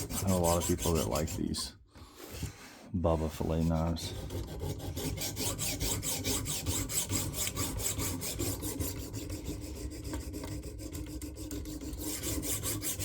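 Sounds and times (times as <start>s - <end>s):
sharpening stone rasping on knife: 0.0s - 1.4s, 3.7s - 13.0s.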